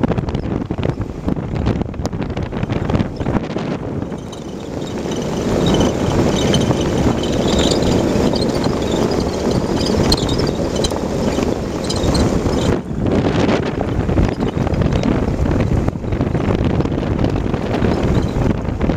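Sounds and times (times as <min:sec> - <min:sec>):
car road and wind noise: 0:00.0 - 0:18.9
high-pitched squeaks: 0:04.0 - 0:12.8, 0:14.2 - 0:15.2, 0:17.7 - 0:18.5.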